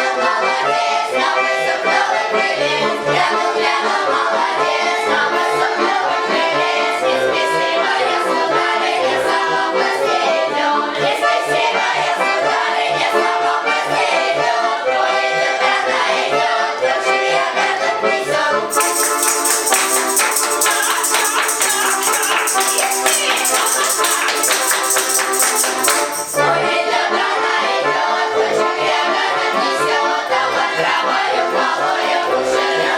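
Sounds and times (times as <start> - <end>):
accordion: 0.0 - 32.9
children singing folk song: 0.0 - 32.9
jingling tambourine: 18.7 - 26.9.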